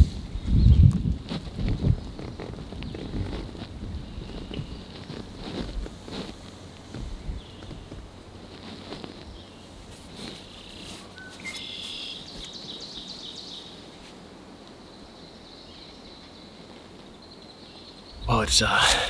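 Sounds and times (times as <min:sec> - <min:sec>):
small birds chirping: 0:08.6 - 0:13.9.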